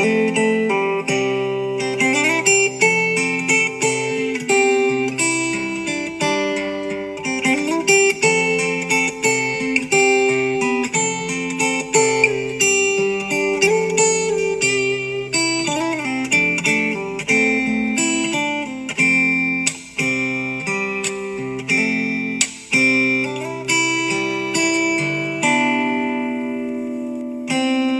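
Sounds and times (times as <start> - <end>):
guitar music: 0.0 - 27.9.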